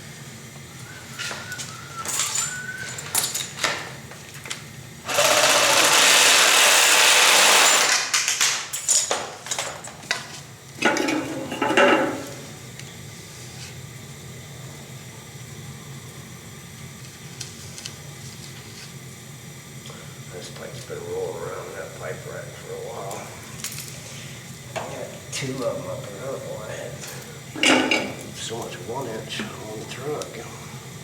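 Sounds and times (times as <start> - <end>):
power tool running: 5.0 - 8.0.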